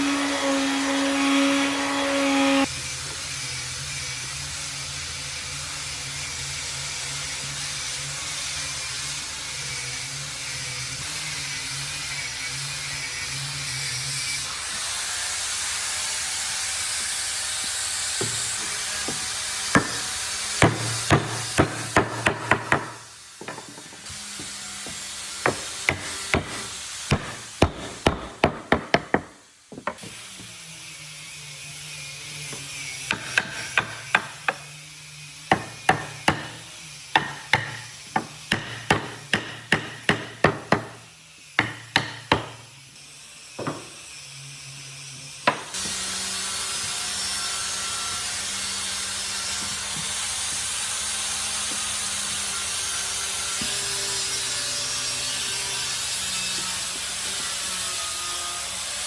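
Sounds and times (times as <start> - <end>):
power tool running: 0.0 - 59.0
hammering on wood: 18.2 - 30.1, 33.1 - 34.6, 35.5 - 36.6, 37.2 - 41.0, 41.6 - 42.6.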